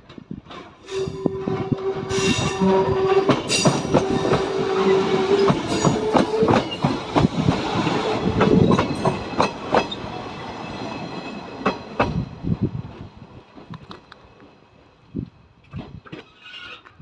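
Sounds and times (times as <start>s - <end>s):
train wheels clacking over rail joints: 3.2s - 10.1s.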